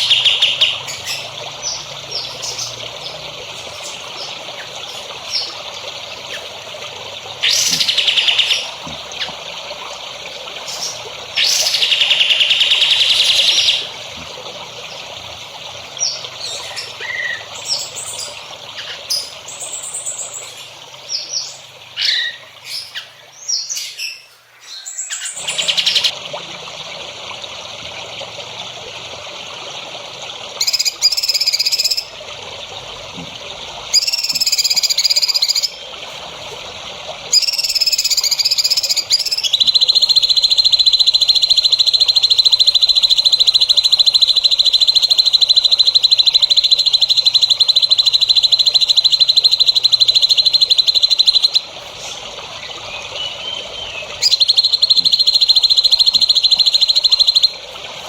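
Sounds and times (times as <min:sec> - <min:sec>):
buzzy repeated bird phrases: 0:07.4 - 0:08.8, 0:30.6 - 0:32.1, 0:37.3 - 0:51.7
rapid high bird trill: 0:07.4 - 0:08.8, 0:30.6 - 0:32.2, 0:33.9 - 0:35.9, 0:37.3 - 0:52.2, 0:53.2 - 0:57.6
songbird chirps and whistles: 0:07.4 - 0:09.3, 0:30.6 - 0:32.1, 0:33.9 - 0:35.8, 0:37.3 - 0:51.7, 0:53.2 - 0:57.6.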